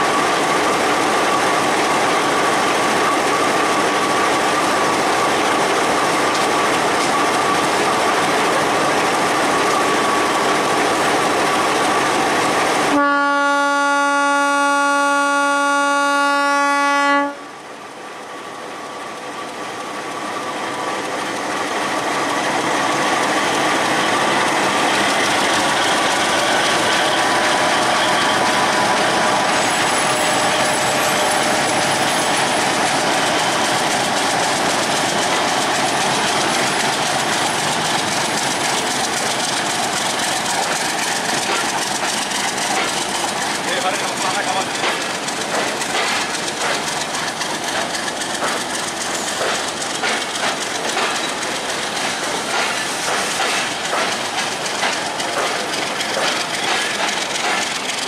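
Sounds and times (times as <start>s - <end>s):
train wheels rattling over track: 0.0s - 15.5s, 18.6s - 58.0s
locomotive horn blast: 12.9s - 17.4s.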